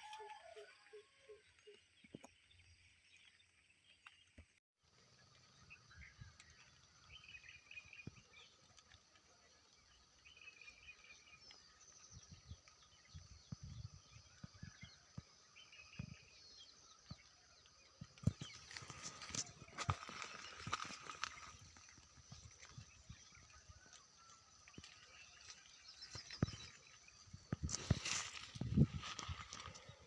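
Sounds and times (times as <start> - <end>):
bird chirps: 5.0 - 30.0.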